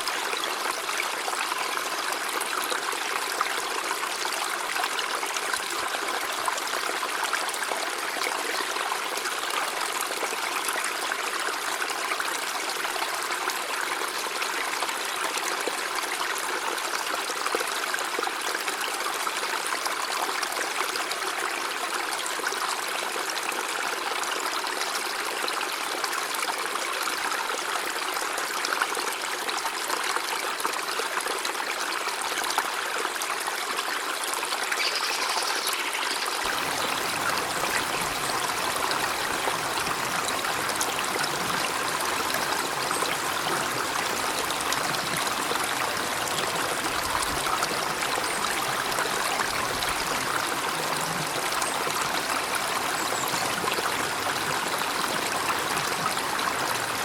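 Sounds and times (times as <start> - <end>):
river flowing over rocks: 35.8 - 57.0.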